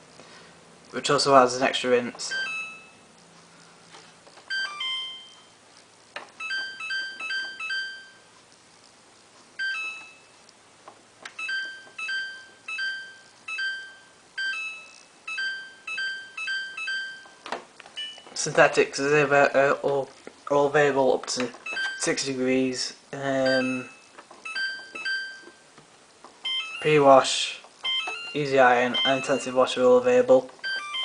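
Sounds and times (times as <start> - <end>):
falling three-note chime: 27.8 - 29.8, 30.6 - 31.0.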